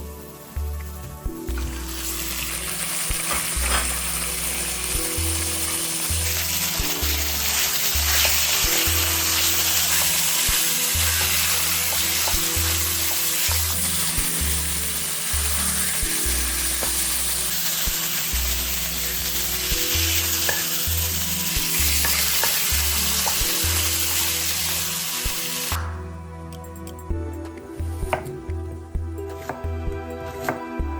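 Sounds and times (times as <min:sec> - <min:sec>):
background music with bass line: 0:00.0 - 0:30.9
food sizzling in a frying pan: 0:01.6 - 0:25.8.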